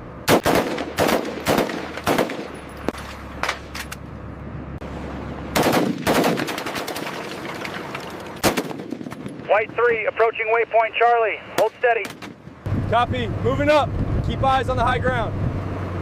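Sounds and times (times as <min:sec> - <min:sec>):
machine gun firing: 0:00.3 - 0:02.6, 0:05.6 - 0:07.6, 0:08.4 - 0:09.2.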